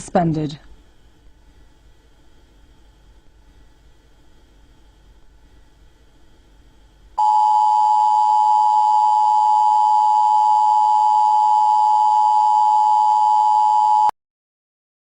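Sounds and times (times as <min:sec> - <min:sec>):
steady two-note electronic tone: 0:07.2 - 0:14.1.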